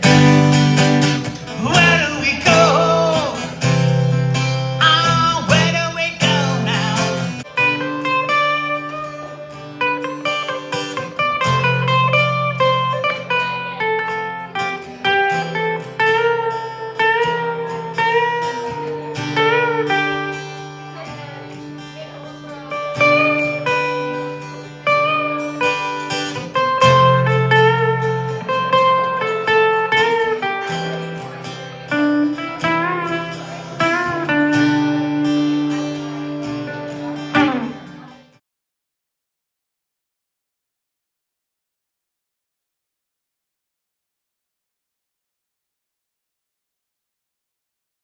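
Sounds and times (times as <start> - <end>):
held bass notes: 0.0 - 7.4
picked guitar melody: 0.0 - 38.4.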